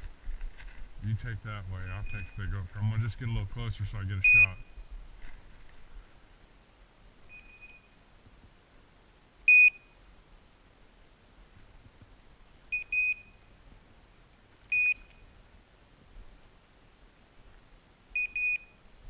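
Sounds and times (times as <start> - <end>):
short high electronic beeps: 1.9 - 2.5, 7.3 - 8.0.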